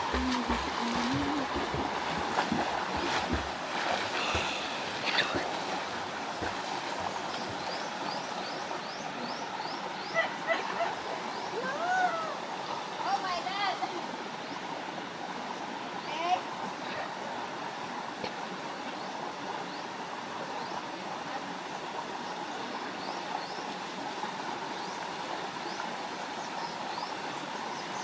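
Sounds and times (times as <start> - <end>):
water splashes: 0.0 - 8.4
river water rushing: 0.0 - 28.0.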